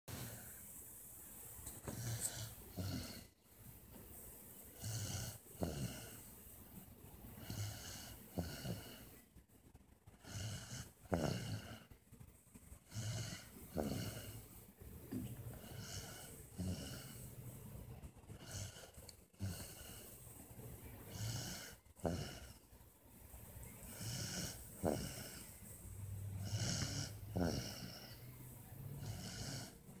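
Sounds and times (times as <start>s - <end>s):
person snoring: 7.4s - 9.2s, 10.2s - 11.9s, 12.9s - 14.5s, 15.6s - 17.4s, 21.1s - 22.6s, 23.8s - 25.6s, 26.2s - 30.0s
slow breathing: 12.8s - 30.0s.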